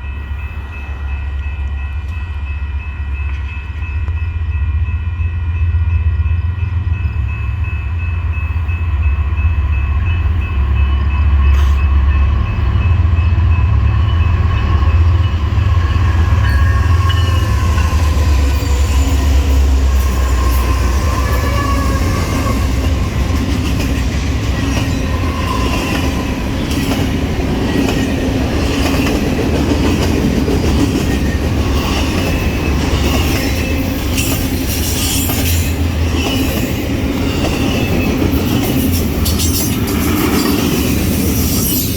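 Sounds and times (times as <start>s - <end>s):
train rumbling past: 0.0s - 41.9s
wheels clickety-clack over rail joints: 13.5s - 41.9s.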